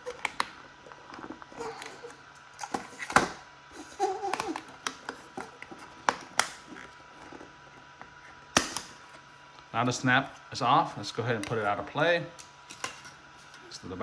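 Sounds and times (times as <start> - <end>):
plastic clips snapping apart: 6.0 - 6.6, 8.6 - 9.0.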